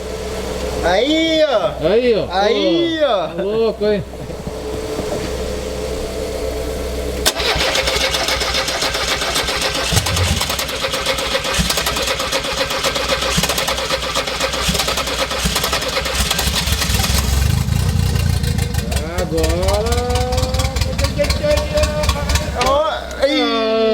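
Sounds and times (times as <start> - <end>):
starter cranking engine: 7.2 - 23.2
steady hum: 9.8 - 11.3.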